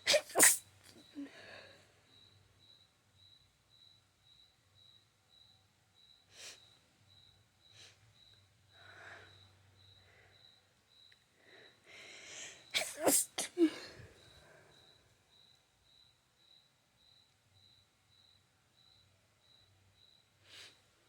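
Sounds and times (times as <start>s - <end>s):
person sneezing: 0.0s - 0.6s, 12.8s - 14.0s
person sniffing: 0.0s - 0.6s, 12.8s - 14.0s.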